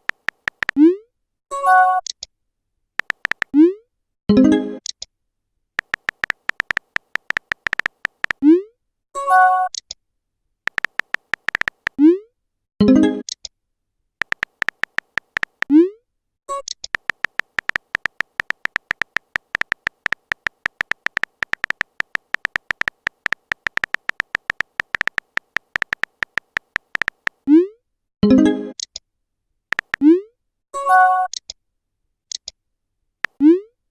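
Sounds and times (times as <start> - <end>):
phone keyboard typing clicks: 0.0 - 0.8, 3.0 - 3.5, 5.8 - 8.4, 10.7 - 12.0, 14.2 - 15.7, 16.5 - 27.4, 29.7 - 30.0.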